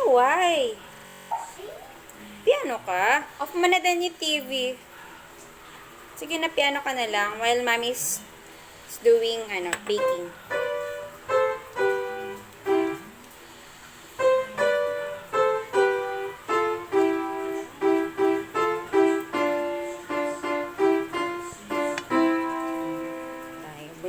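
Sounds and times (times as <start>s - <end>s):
child playing piano melody: 9.9s - 13.2s, 14.1s - 23.8s.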